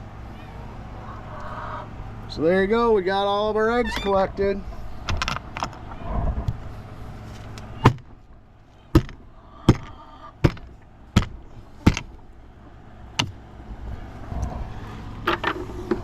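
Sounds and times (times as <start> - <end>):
sharp knocks: 8.9 - 12.1, 13.2 - 13.4.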